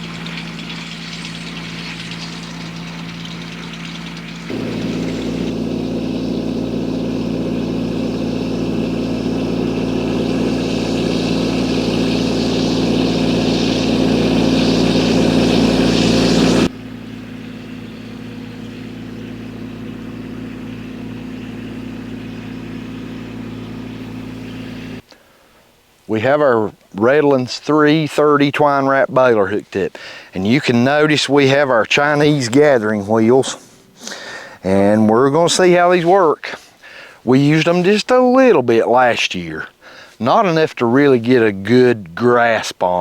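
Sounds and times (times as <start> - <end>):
diesel tractor engine running: 0.0 - 25.0.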